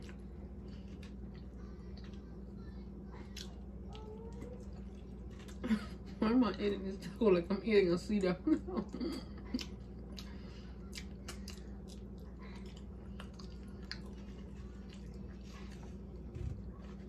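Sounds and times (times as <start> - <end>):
mouth chewing with moist smacks: 9.4 - 17.0.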